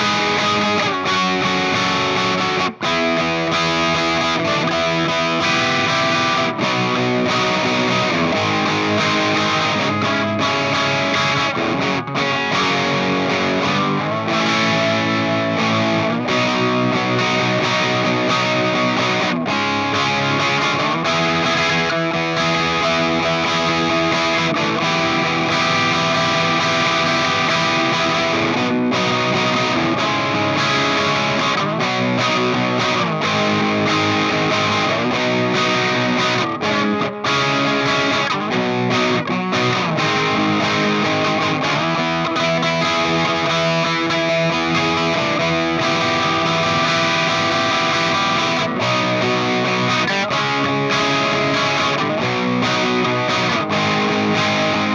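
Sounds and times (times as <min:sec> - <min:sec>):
distorted electric guitar chords: 0:00.0 - 0:54.9.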